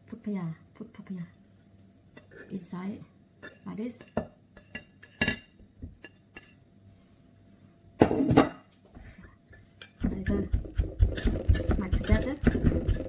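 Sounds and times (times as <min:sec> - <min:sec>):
kitchen utensils knocking and clinking: 0:09.8 - 0:13.0.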